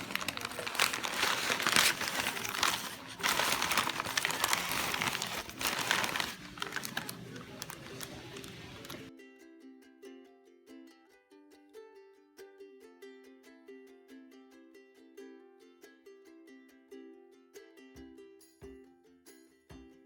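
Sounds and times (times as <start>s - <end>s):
plastic packaging crinkling: 0.0s - 9.1s.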